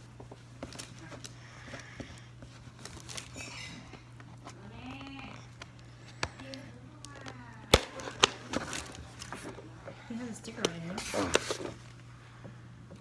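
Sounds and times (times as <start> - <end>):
steady low hum: 0.0 - 13.0
plastic egg clicking and twisting: 4.2 - 9.6.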